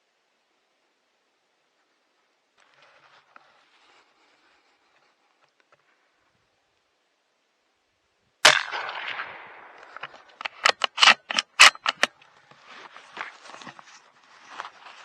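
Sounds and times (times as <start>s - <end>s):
soft rustling: 1.7s - 6.2s, 12.0s - 15.0s
rifle shot with echo: 8.4s - 12.1s
sharp clicks and knocks: 9.8s - 12.1s.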